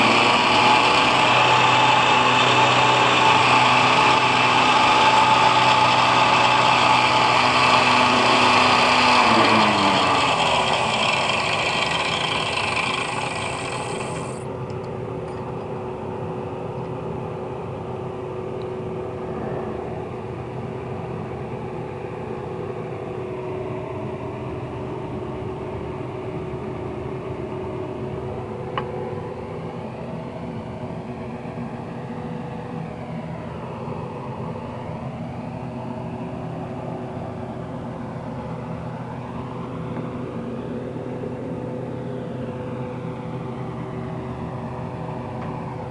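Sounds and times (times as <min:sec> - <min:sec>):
grinder motor humming: 0:00.0 - 0:15.8.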